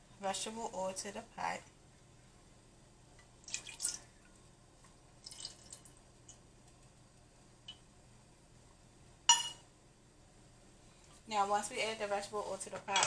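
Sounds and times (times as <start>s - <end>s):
oil dripping and splashing: 3.4s - 4.1s, 5.2s - 6.0s.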